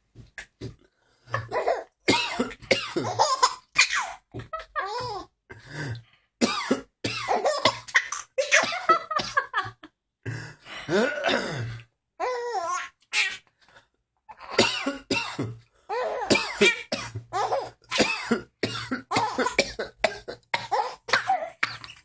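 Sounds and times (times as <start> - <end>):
baby laughing: 1.3 - 2.0, 3.0 - 5.3, 7.3 - 8.9, 12.2 - 13.5, 15.9 - 18.0, 19.1 - 19.7, 20.4 - 22.0
man coughing: 2.1 - 3.3, 6.4 - 7.9, 10.9 - 11.8, 14.5 - 15.6, 16.3 - 17.2, 17.9 - 21.3.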